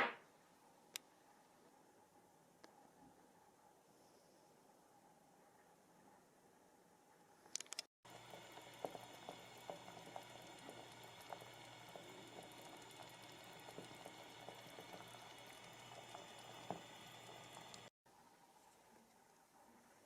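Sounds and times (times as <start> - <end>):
food simmering in a pot: 8.0 - 18.0.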